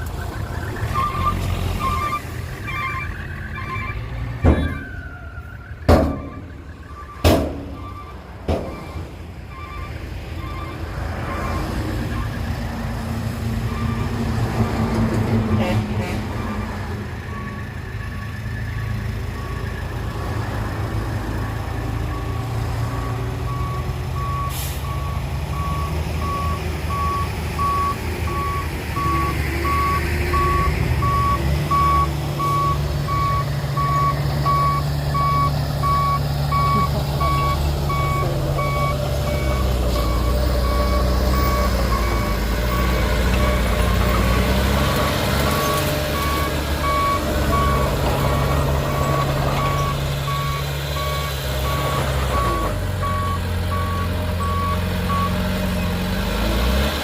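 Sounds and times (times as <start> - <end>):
reversing alarm beeping: 0.0 - 12.4, 23.0 - 43.6, 45.0 - 55.4
diesel engines running: 0.0 - 57.0
faint higher beep: 0.6 - 5.0.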